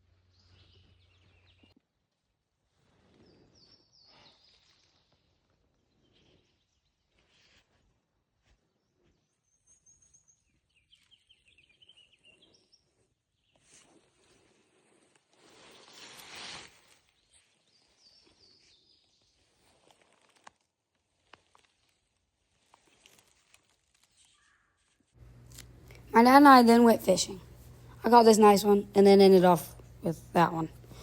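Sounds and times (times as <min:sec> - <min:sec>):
faint bird chirps and trills: 0:03.2 - 0:07.5, 0:08.6 - 0:13.8, 0:17.2 - 0:19.5, 0:24.1 - 0:25.1.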